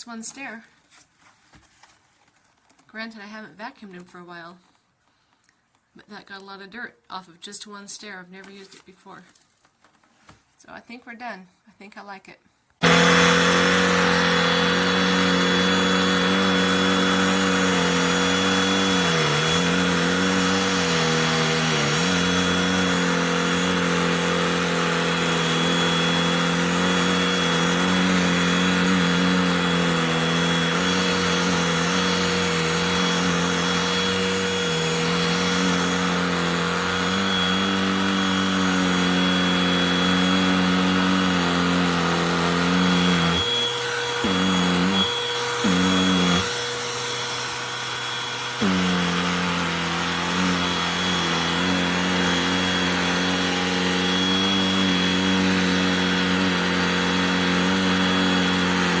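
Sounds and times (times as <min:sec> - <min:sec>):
handheld vacuum running: 0:12.8 - 0:59.0.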